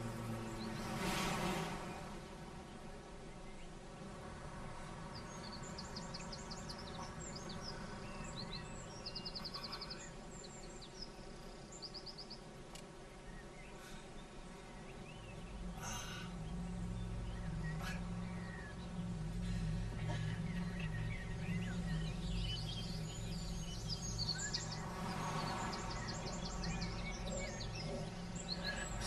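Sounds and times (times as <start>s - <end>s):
faint bird chirps and trills: 0.0s - 29.0s
steady low hum: 0.0s - 29.0s
low rumble: 15.2s - 29.0s.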